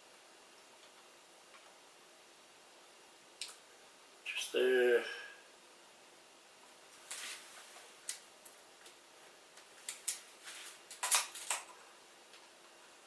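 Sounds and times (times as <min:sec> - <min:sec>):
tape measure and timber clicks: 0:10.9 - 0:11.7.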